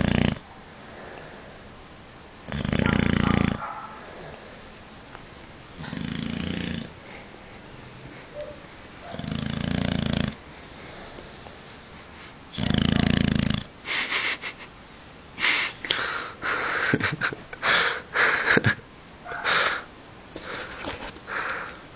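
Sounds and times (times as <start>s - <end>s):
dog snoring: 0.0s - 1.6s, 2.5s - 4.6s, 5.8s - 7.0s, 9.1s - 11.6s, 12.5s - 13.7s
dog wheezing breaths: 10.6s - 12.4s, 19.3s - 21.8s.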